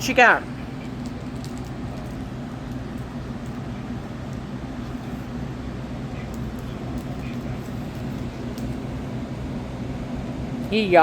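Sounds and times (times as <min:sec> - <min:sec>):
electric fan humming: 0:00.0 - 0:11.0.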